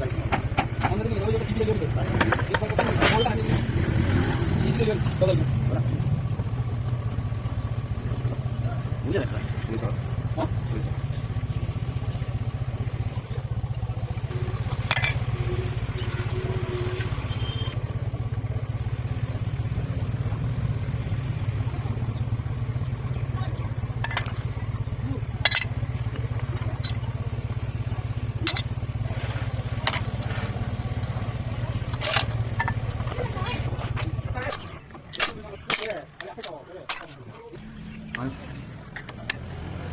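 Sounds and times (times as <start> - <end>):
motorcycle engine running: 0.0 - 39.9
metallic clink of tools: 25.4 - 25.8, 35.1 - 37.3.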